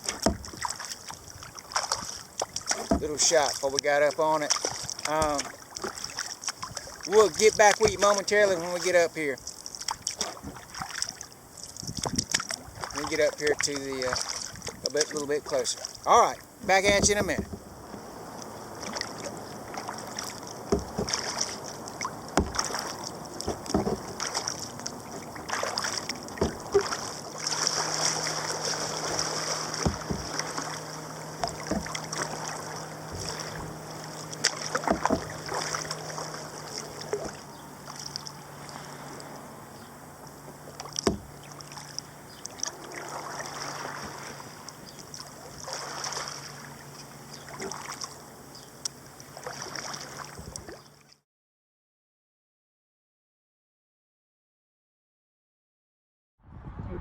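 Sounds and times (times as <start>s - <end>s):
paddle knocking against kayak: 0.0s - 3.6s, 4.4s - 9.0s, 9.8s - 11.2s, 16.6s - 38.1s, 40.3s - 42.0s
low steady hum: 0.0s - 50.8s
paddle splashing: 0.0s - 50.9s
water running along hull: 0.0s - 51.2s.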